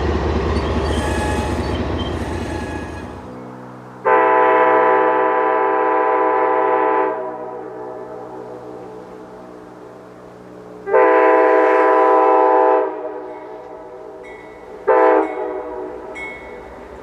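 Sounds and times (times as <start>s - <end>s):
train rumbling past: 0.0s - 17.0s
locomotive air horn blast: 0.8s - 3.4s, 4.0s - 8.3s, 10.8s - 14.2s, 14.8s - 16.2s.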